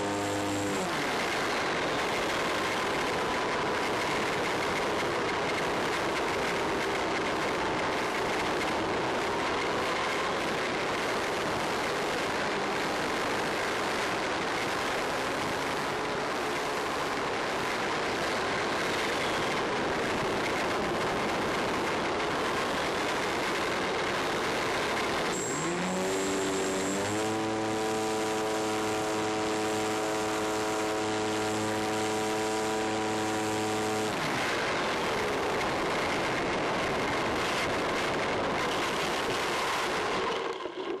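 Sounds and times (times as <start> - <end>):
model plane motor whine: 0.0 - 3.3, 25.3 - 35.3.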